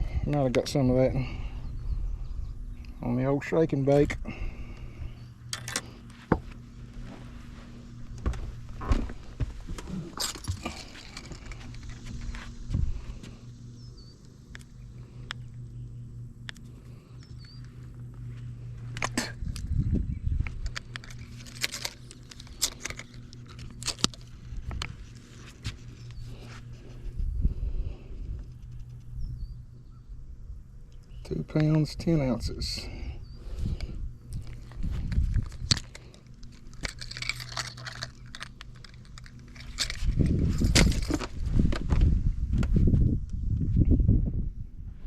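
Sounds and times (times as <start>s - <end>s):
steady low hum: 0.0s - 45.0s
footsteps on boat deck: 6.1s - 11.0s
knocks and thumps of gear: 8.2s - 11.9s, 36.7s - 42.7s
hands clicking and rustling: 34.3s - 41.3s.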